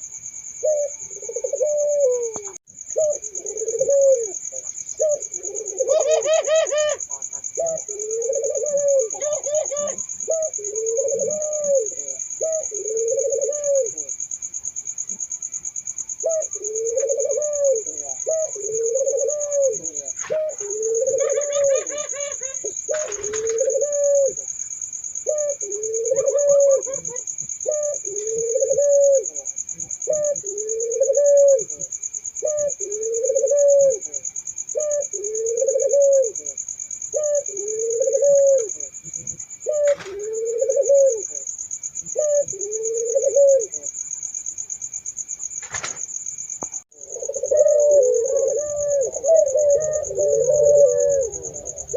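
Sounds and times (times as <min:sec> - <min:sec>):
doves cooing: 0:00.0 - 0:14.3, 0:16.0 - 0:44.1, 0:46.9 - 0:51.9
warbling bird chirps: 0:47.0 - 0:51.9.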